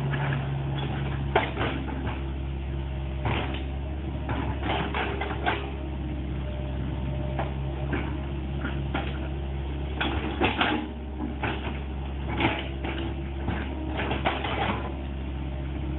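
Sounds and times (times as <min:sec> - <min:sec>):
excavator diesel engine: 0:00.0 - 0:15.9
metal clanks and knocks: 0:00.1 - 0:02.3, 0:03.2 - 0:05.8, 0:07.3 - 0:09.3, 0:09.9 - 0:15.1.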